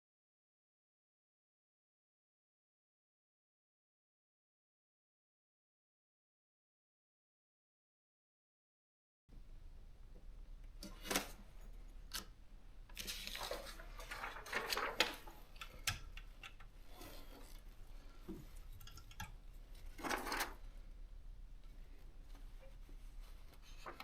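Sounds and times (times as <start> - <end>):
typewriter rattling and rustling: 12.9 - 17.6, 18.4 - 20.8.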